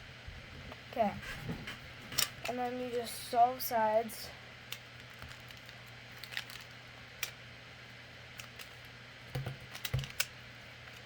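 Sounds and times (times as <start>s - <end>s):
plastic puzzle clicking: 4.7s - 7.4s, 8.4s - 8.8s, 9.4s - 10.3s.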